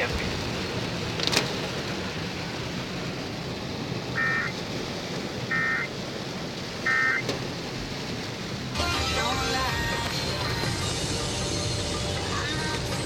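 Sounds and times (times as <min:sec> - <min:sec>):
warbling digital alert tones: 0:04.2 - 0:04.5, 0:05.5 - 0:05.9, 0:06.9 - 0:07.2.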